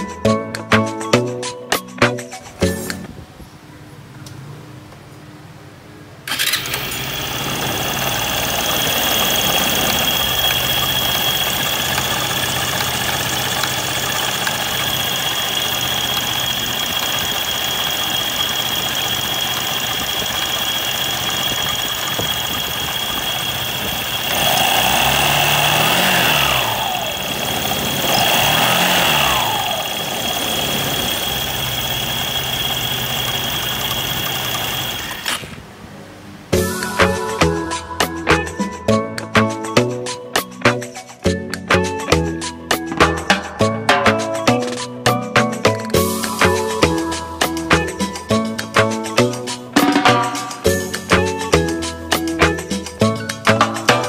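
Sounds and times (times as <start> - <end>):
scooter engine idling with whine: 6.3 - 35.6
scooter engine revving: 6.3 - 35.6.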